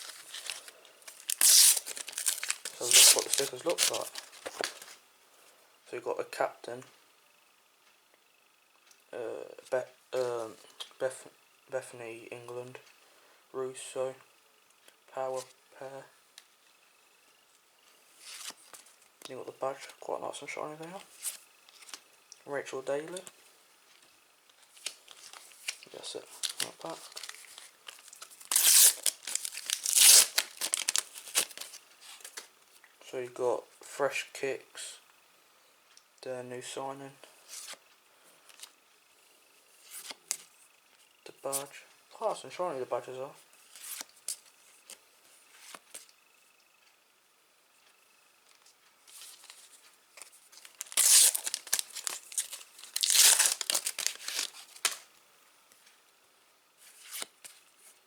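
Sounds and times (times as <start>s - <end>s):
paper tearing and crinkling: 0.0s - 5.0s, 24.8s - 31.8s, 50.6s - 55.0s.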